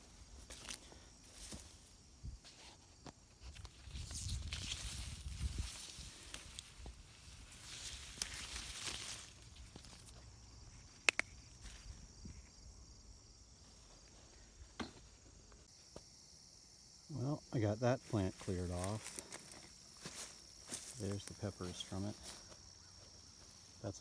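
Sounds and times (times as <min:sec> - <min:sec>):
faint insect drone: 0:00.0 - 0:24.0
leaves and stems rustling: 0:00.4 - 0:12.2, 0:18.0 - 0:23.8
stem snapping: 0:08.0 - 0:10.1, 0:10.8 - 0:11.7.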